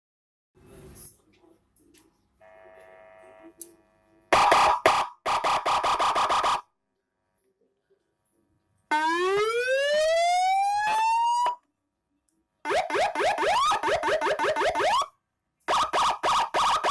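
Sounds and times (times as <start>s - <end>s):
rapid pulsing siren tone: 4.4s - 6.6s, 8.9s - 11.6s, 12.7s - 15.1s, 15.7s - 16.9s
electronic siren through loudspeaker: 4.4s - 6.7s, 8.9s - 11.6s, 12.7s - 15.1s, 15.7s - 16.9s
siren wail rising in pitch: 8.9s - 11.6s, 12.7s - 15.1s.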